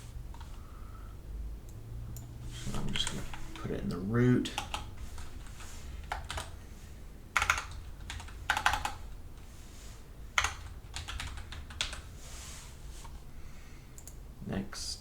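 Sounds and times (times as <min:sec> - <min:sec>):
low steady hum: 0:00.0 - 0:15.0
computer keyboard typing: 0:02.2 - 0:06.6, 0:07.3 - 0:09.2, 0:10.4 - 0:12.1.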